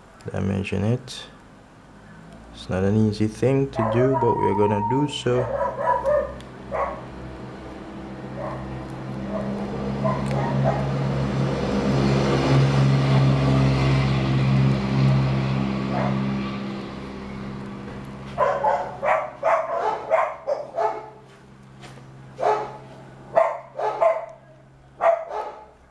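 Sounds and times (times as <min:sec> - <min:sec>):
dog barking: 0:03.8 - 0:04.7, 0:05.4 - 0:07.1, 0:08.3 - 0:11.0, 0:15.9 - 0:16.2, 0:18.4 - 0:21.2, 0:22.4 - 0:24.4, 0:25.0 - 0:25.8
low mechanical hum: 0:05.2 - 0:25.9.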